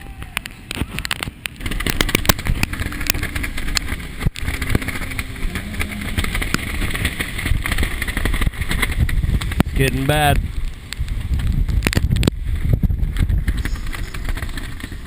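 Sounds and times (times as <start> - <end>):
strong wind buffeting microphone: 0.0 - 15.0
sharp clicks and knocks: 0.4 - 10.0.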